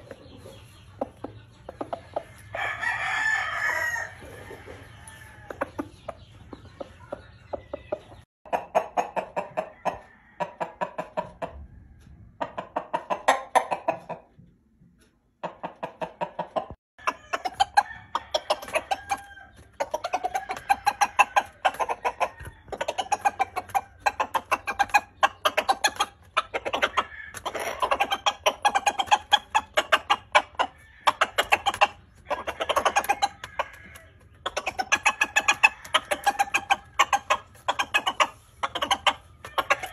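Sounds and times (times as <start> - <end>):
chickens clucking: 0.0 - 39.9.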